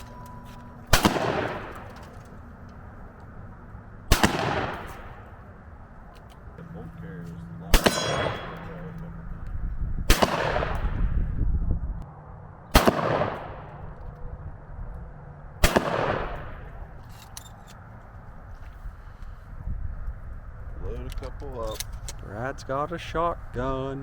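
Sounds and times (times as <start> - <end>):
shotgun shots echoing: 0.9 - 2.1, 4.1 - 5.4, 7.7 - 8.9, 10.1 - 11.2, 12.7 - 13.9, 15.6 - 16.8.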